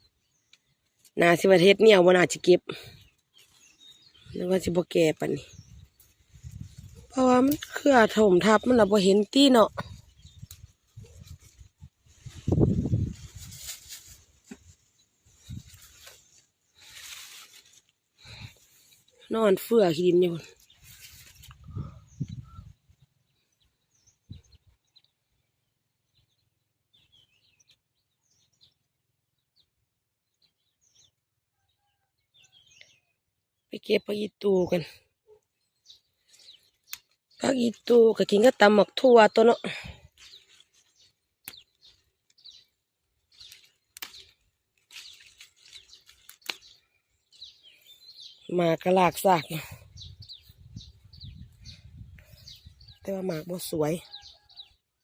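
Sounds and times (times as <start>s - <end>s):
small birds chirping: 0.0s - 55.0s
faint bird chirps: 53.8s - 54.8s.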